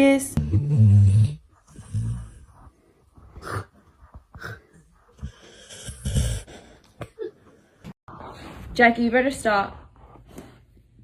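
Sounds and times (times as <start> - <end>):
pet breathing noisily: 1.6 - 7.0.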